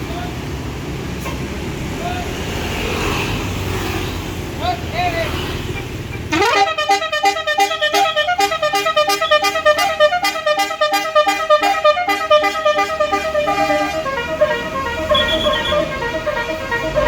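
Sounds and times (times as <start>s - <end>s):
bus engine hum: 0.0s - 17.0s
multi-tone bus horn melody: 6.3s - 17.0s.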